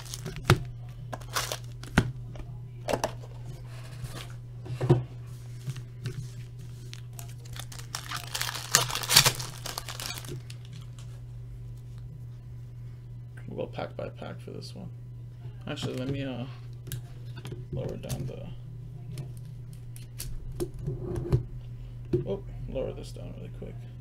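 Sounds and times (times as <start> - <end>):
wrapper crinkling and tearing: 0.0 - 0.6, 1.2 - 1.9, 6.4 - 11.1
steady low hum: 0.0 - 24.0.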